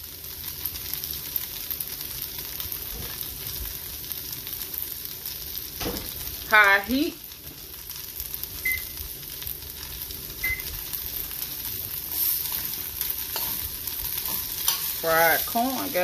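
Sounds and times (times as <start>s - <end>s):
corn sizzling in butter: 0.0s - 16.0s.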